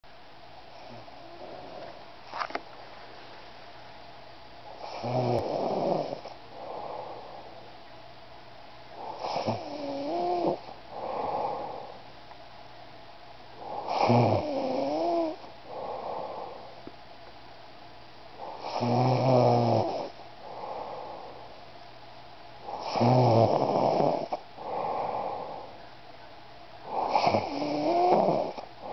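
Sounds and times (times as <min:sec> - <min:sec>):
person snoring: 0:04.8 - 0:07.4, 0:09.0 - 0:12.0, 0:13.6 - 0:16.7, 0:18.4 - 0:21.4, 0:22.6 - 0:25.8, 0:26.8 - 0:28.9.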